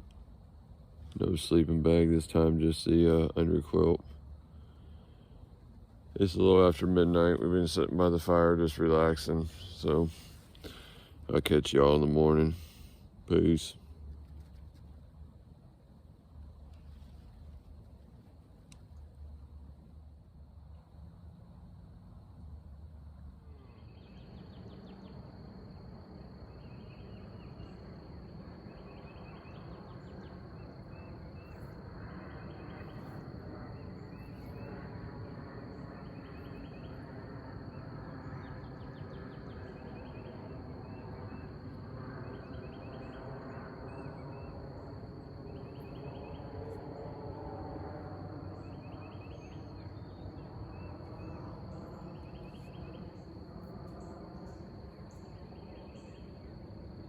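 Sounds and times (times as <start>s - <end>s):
cricket chirps: 0.0s - 57.0s
high-pitched insect trill: 22.8s - 57.0s.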